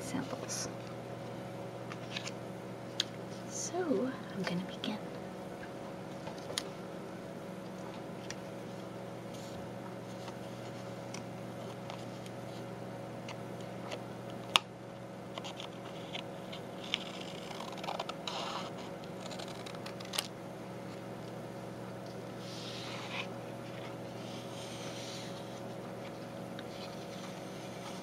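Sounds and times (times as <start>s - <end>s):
steady low hum: 0.0s - 28.0s
scissors cutting stiff paper: 16.8s - 20.3s.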